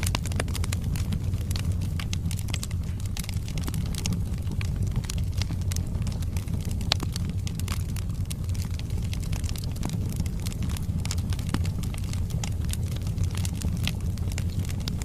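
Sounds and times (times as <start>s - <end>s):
logs crackling and popping: 0.0s - 15.0s
low rumble of flames: 0.0s - 15.0s.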